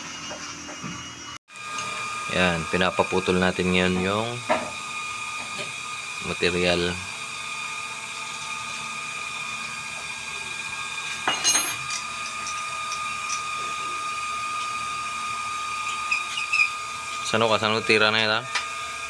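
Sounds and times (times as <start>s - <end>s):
machine tool whining: 0.0s - 19.0s
sharp ringing metal sound: 11.3s - 11.9s.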